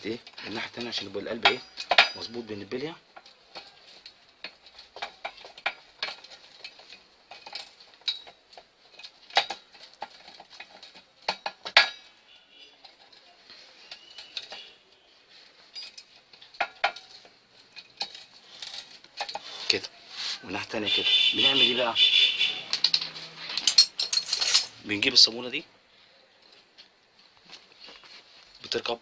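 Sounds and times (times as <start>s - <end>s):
metal parts clicking: 0.2s - 2.4s, 3.1s - 12.2s, 15.6s - 19.9s, 22.2s - 24.8s.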